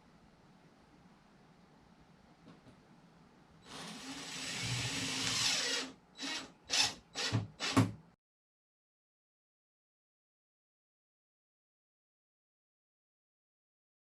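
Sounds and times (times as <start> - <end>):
power tool cutting wood: 3.7 - 7.9.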